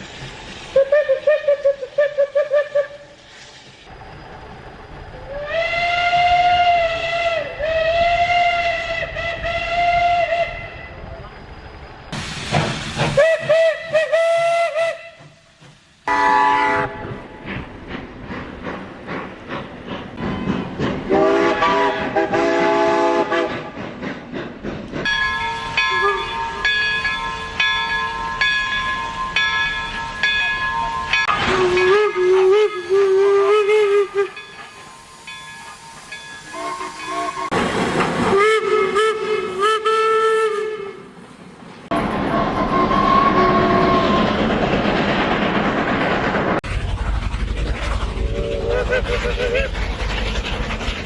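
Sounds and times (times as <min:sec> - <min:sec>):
steam hissing: 0:00.0 - 0:51.0
steam locomotive whistle: 0:00.7 - 0:03.2, 0:05.2 - 0:11.2, 0:13.0 - 0:15.5, 0:16.1 - 0:17.4, 0:21.1 - 0:23.8, 0:25.4 - 0:27.7, 0:31.1 - 0:37.6, 0:38.3 - 0:41.2, 0:42.2 - 0:44.4
locomotive exhaust beats: 0:12.1 - 0:41.2, 0:41.9 - 0:51.0.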